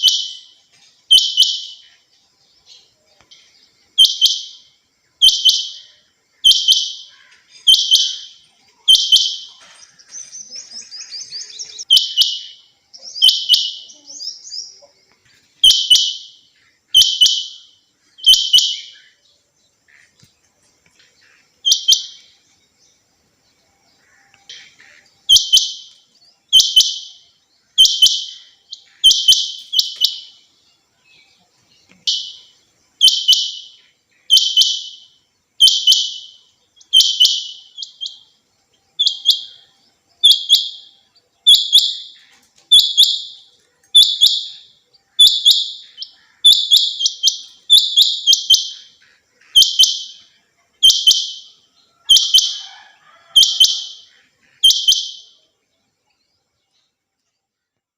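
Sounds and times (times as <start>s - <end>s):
quail calling high notes: 32.0s - 38.3s, 39.0s - 55.4s.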